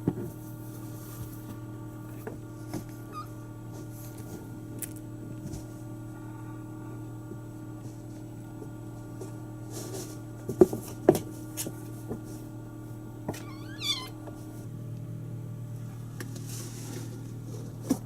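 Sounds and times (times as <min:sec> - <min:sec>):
steady low hum: 0:00.0 - 0:18.0
kitten mewing: 0:13.4 - 0:14.2.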